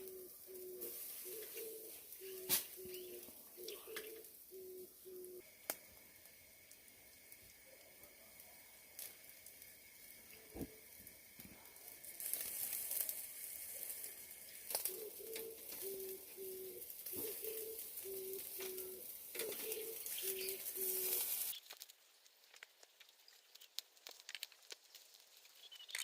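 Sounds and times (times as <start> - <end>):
dove cooing: 0.0 - 5.4, 13.7 - 21.5
faint sizzling hiss: 0.0 - 26.0.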